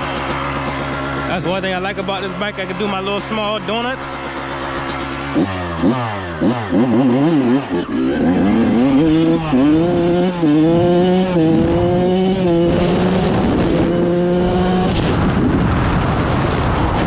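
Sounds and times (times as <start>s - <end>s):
dirt bike engine revving: 0.0s - 15.2s
rough rushing noise: 6.5s - 12.0s.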